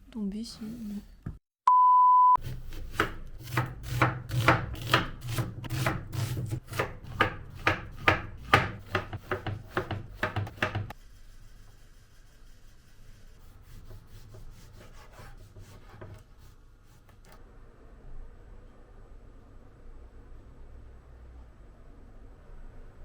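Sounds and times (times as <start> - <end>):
short beep: 1.6 - 2.4
knife chopping on cutting board: 2.4 - 11.0.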